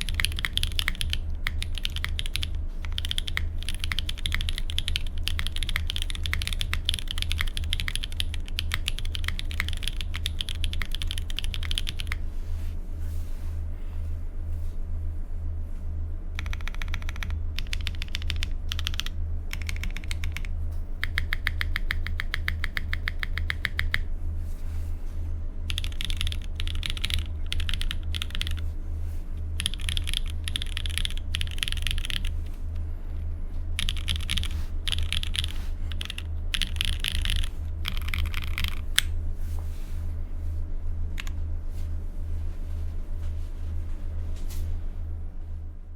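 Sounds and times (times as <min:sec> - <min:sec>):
mechanical keyboard typing: 0:00.0 - 0:12.2, 0:16.4 - 0:24.0, 0:25.7 - 0:28.6, 0:29.6 - 0:32.5, 0:33.8 - 0:39.1
steady low hum: 0:00.0 - 0:45.9.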